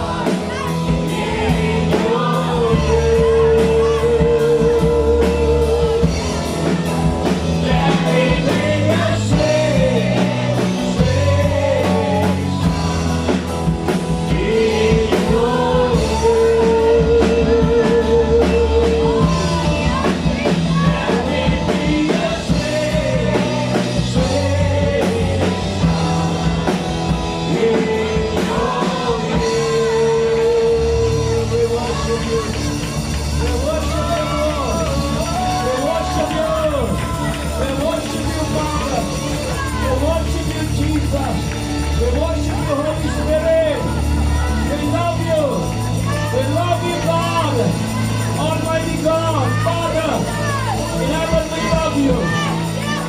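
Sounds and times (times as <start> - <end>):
person singing: 0.0 - 40.8
bass and drums: 0.0 - 53.0
live worship band music: 0.0 - 53.0.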